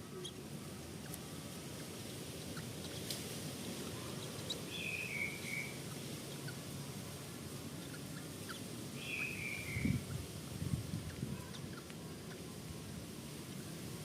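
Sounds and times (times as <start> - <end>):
bird calling: 4.0 - 6.6, 7.8 - 10.2
faint bird chirps: 4.0 - 6.6, 7.8 - 10.2.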